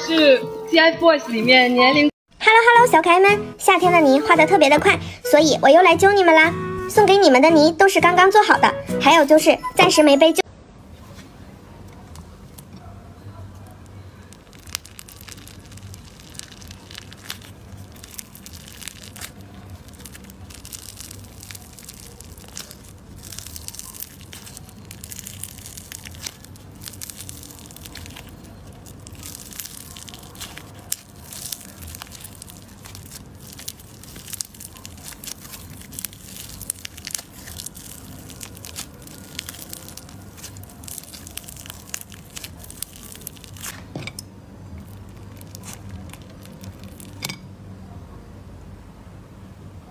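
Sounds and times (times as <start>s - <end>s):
slime crackling and popping: 13.5s - 47.4s.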